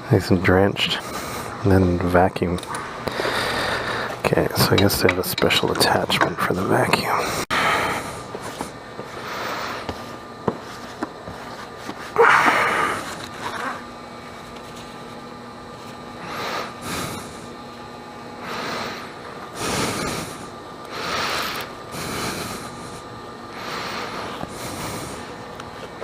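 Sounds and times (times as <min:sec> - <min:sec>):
person breathing heavily: 0:03.0 - 0:04.2, 0:07.1 - 0:10.0, 0:12.2 - 0:13.8, 0:16.2 - 0:17.5, 0:18.4 - 0:25.5.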